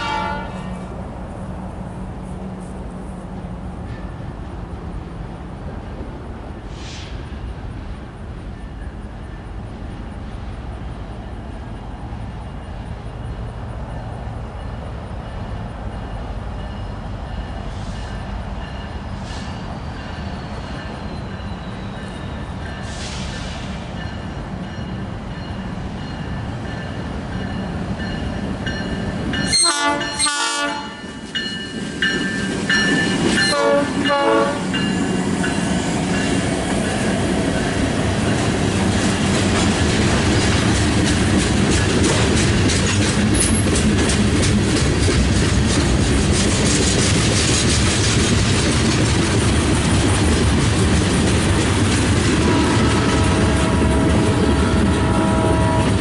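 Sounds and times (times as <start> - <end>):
train horn blasts: 0.0 - 0.9, 29.4 - 31.2, 33.4 - 34.8, 52.4 - 56.0
train rumbling past: 0.0 - 56.0
wheels clattering over rail joints: 31.2 - 55.7.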